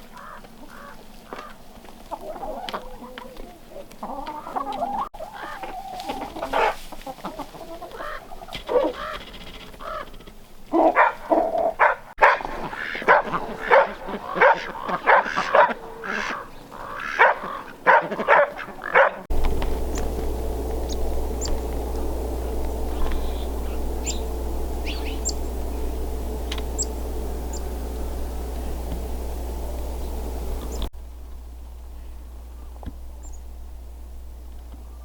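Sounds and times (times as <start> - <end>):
chickens clucking and squawking: 0.2 - 10.1, 10.7 - 30.9
steady low hum: 19.3 - 35.0
faint high bird chirps: 20.8 - 30.9.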